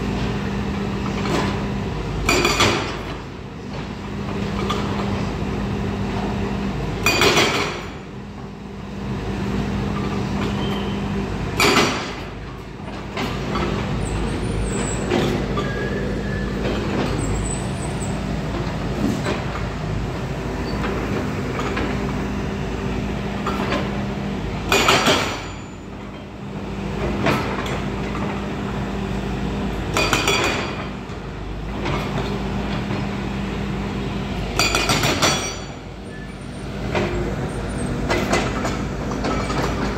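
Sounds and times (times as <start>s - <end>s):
excavator diesel engine running: 3.0s - 39.9s.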